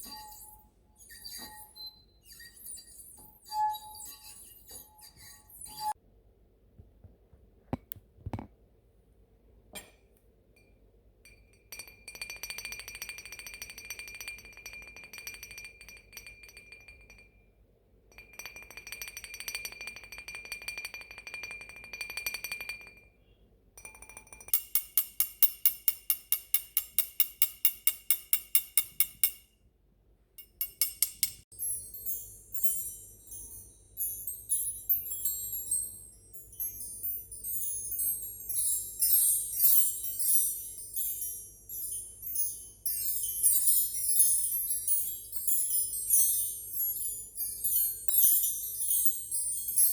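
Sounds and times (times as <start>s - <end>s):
high ringing tone with rattle: 0.0s - 6.0s, 10.6s - 23.2s, 30.4s - 49.9s
tinkling: 0.0s - 6.0s, 10.6s - 29.5s, 30.4s - 49.9s.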